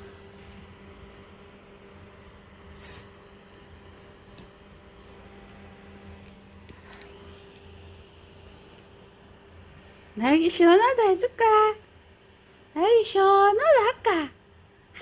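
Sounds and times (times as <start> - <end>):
electric fan humming: 0.0 - 15.0
short hiss: 2.7 - 3.2.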